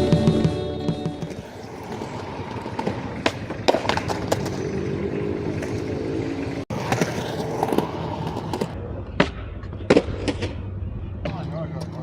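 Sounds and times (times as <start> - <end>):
skateboard rolling on concrete: 0.0 - 12.0
skateboard clacks: 1.1 - 10.6.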